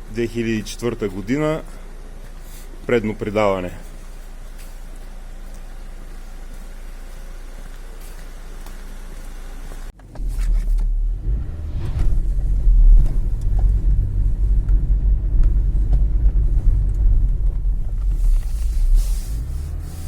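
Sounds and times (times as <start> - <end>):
car engine humming: 3.2 - 20.0
loud low rumble: 10.2 - 20.0.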